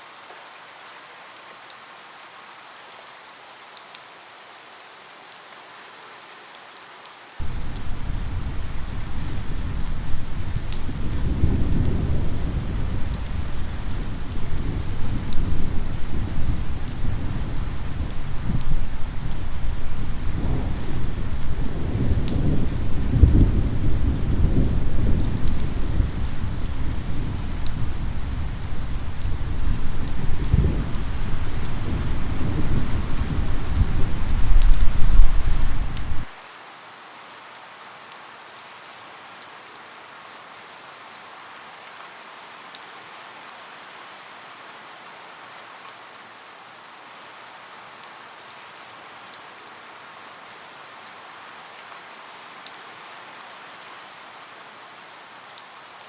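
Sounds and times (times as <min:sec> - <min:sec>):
steady rain: 0:00.0 - 0:56.0
thunder rumbling: 0:07.4 - 0:36.3.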